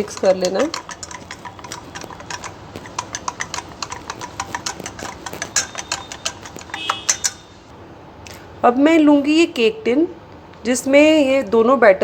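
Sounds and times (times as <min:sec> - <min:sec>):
spoon stirring batter in bowl: 0:00.0 - 0:07.7
ringing clink: 0:04.8 - 0:07.7.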